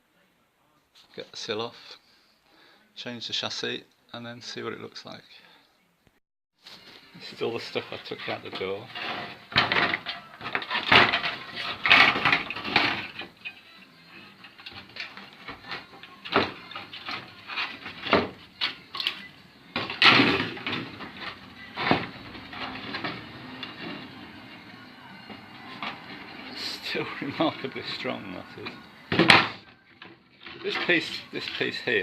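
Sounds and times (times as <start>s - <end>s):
metal and wood parts clattering: 7.2s - 32.0s.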